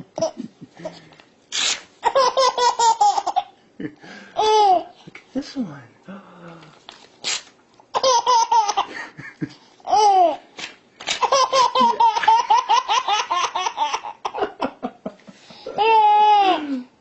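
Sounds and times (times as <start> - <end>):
paper tearing: 1.5 - 1.9, 6.9 - 7.6
baby laughing: 1.6 - 3.5, 7.9 - 9.0, 9.8 - 10.4, 11.1 - 14.6, 15.8 - 16.6.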